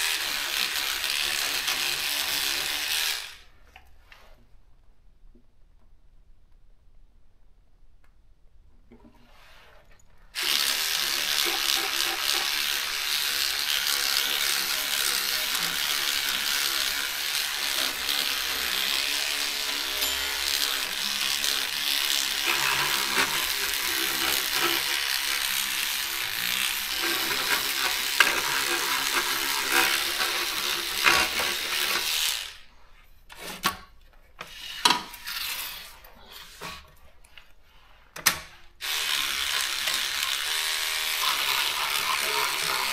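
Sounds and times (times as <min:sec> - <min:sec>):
electric brush scrubbing plastic: 0:00.0 - 0:03.6, 0:10.4 - 0:32.7, 0:38.8 - 0:42.9.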